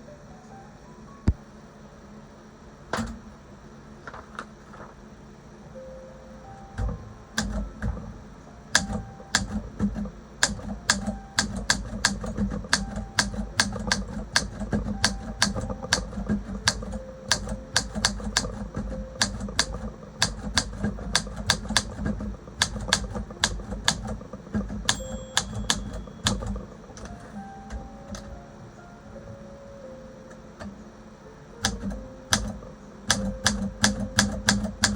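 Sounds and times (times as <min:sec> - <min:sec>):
typewriter keys striking: 0:06.8 - 0:28.3, 0:31.6 - 0:34.9
typewriter bell ring: 0:24.8 - 0:26.9.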